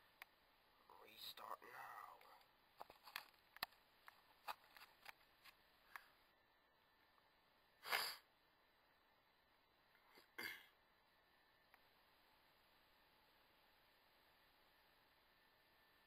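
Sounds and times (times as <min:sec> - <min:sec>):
person coughing: 0:10.4 - 0:10.7.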